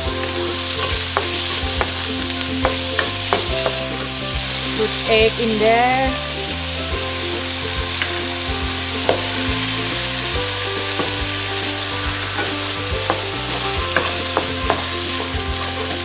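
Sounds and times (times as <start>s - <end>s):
egg sizzling in hot oil: 6.2s - 16.0s
spatula scraping a pan: 7.1s - 16.0s.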